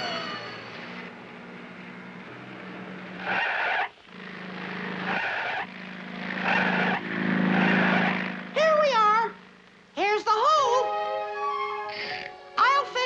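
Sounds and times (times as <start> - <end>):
tire screeches: 0.0 - 8.7
cartoon car engine hum: 0.0 - 10.7.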